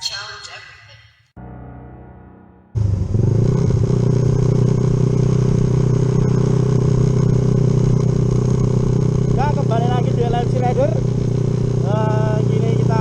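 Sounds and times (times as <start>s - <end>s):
motorcycle engine running: 2.8s - 13.0s.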